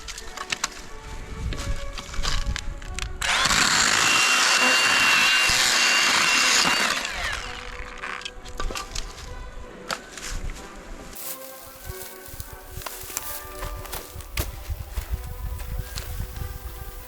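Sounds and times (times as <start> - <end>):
chainsaw high whine: 3.2 - 7.8.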